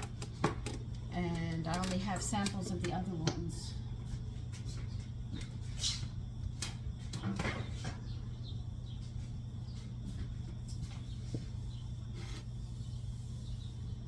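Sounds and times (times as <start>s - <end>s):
kitchen items clicking and tapping: 0.0s - 3.6s
steady low hum: 0.0s - 14.0s.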